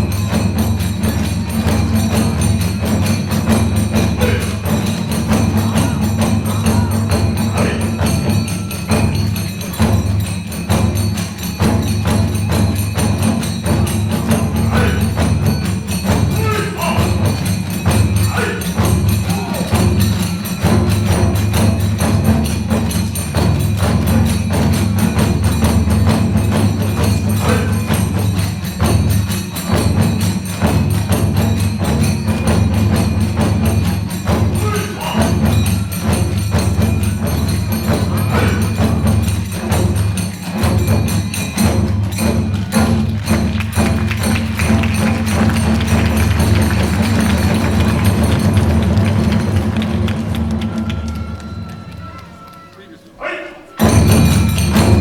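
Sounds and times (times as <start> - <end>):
taiko drums beating: 0.0 - 52.7, 53.7 - 55.0
hand cymbals clashing: 0.0 - 55.0
bamboo flute melody: 27.4 - 28.2, 38.0 - 39.1, 50.0 - 55.0.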